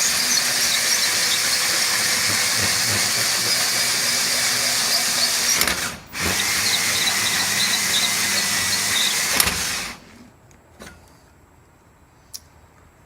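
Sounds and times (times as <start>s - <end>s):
cordless drill with hole saw cutting: 0.0s - 10.2s.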